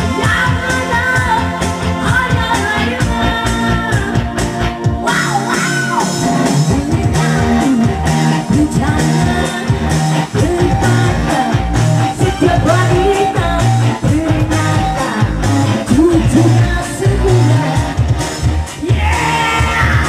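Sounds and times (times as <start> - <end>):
guitar: 0.0 - 20.0
steady beat: 3.0 - 20.0
person singing: 5.0 - 18.0, 18.8 - 20.0.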